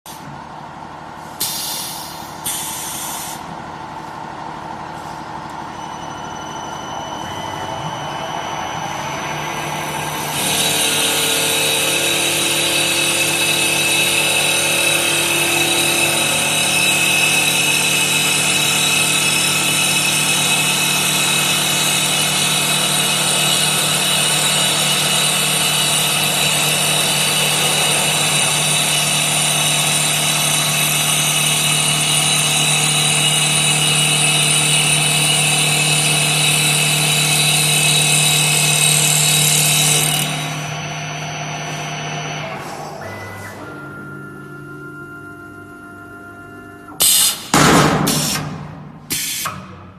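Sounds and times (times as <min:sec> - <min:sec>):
machine hum: 0:03.5 - 0:49.9
lathe cutting wood: 0:07.2 - 0:44.0.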